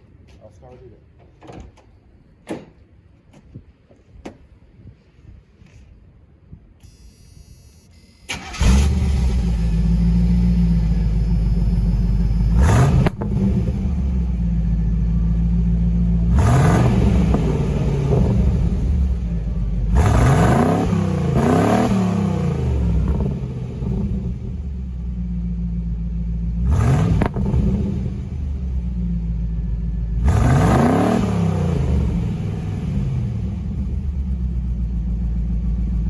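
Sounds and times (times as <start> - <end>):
engine revving: 8.3 - 24.9, 26.4 - 29.1, 30.0 - 34.4
car engine idling: 8.3 - 36.0
car engine starting: 8.3 - 36.0.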